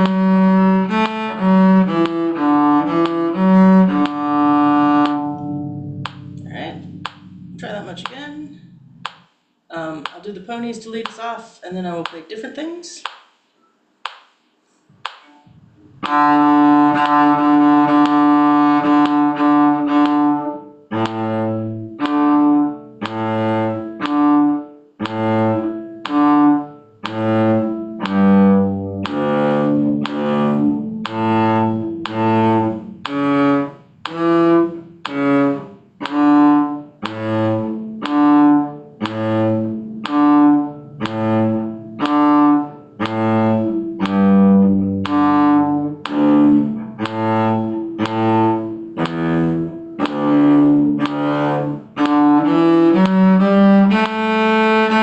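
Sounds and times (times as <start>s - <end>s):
cello bowing a slow melody: 0.0s - 9.1s, 15.4s - 55.0s.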